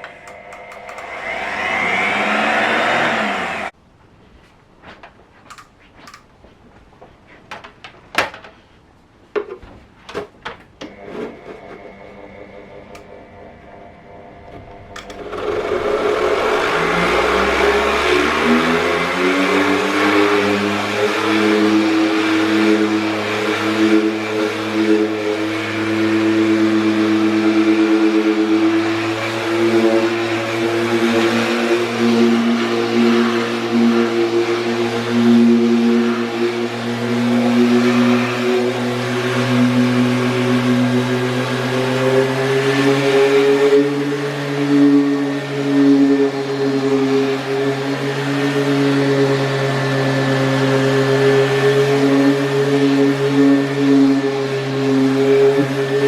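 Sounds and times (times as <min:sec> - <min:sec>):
power tool motor running: 0:00.0 - 0:03.7, 0:10.9 - 0:56.0
knocks and clicks of handling: 0:04.9 - 0:08.7.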